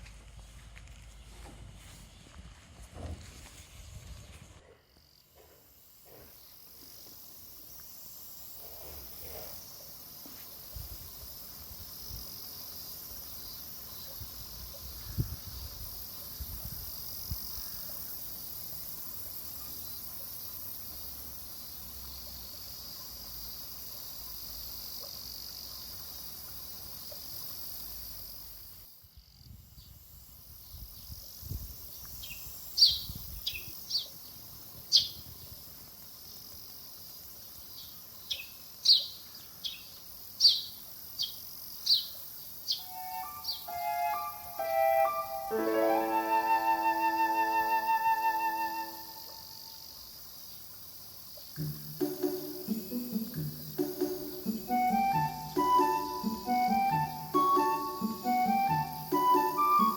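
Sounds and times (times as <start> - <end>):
insects droning: 0.0 - 59.9
bird chirping: 34.9 - 35.2, 37.7 - 45.5.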